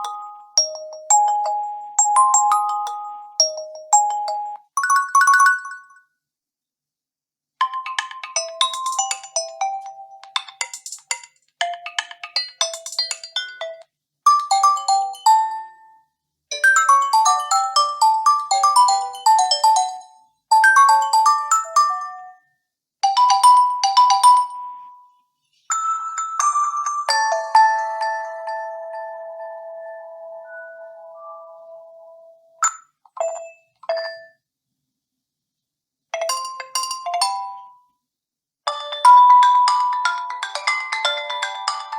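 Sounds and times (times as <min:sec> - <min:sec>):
bell-like phone ringtones: 0:07.6 - 0:10.8, 0:25.7 - 0:34.4, 0:38.7 - 0:41.9.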